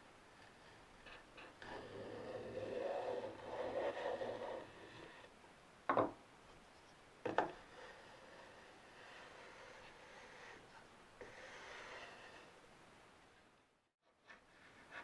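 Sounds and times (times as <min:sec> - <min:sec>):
hand tool rasping wood: 0:01.1 - 0:05.3.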